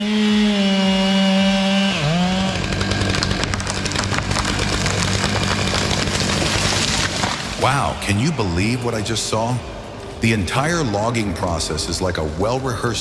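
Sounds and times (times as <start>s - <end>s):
chainsaw cutting wood: 0.0s - 7.7s.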